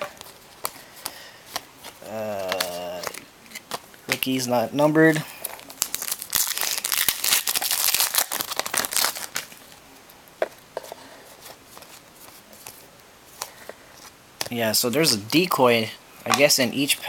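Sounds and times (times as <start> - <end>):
wrapper tearing and crinkling: 5.5 - 9.8.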